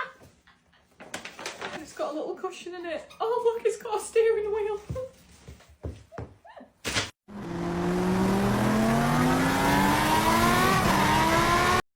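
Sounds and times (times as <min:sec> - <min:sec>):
car engine accelerating: 0:07.3 - 0:11.8.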